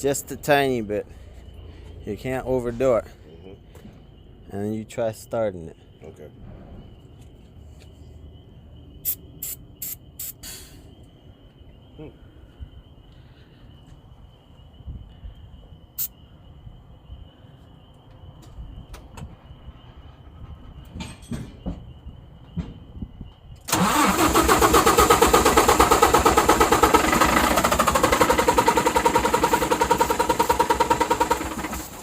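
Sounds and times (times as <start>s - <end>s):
starter cranking diesel engine: 23.7s - 32.0s.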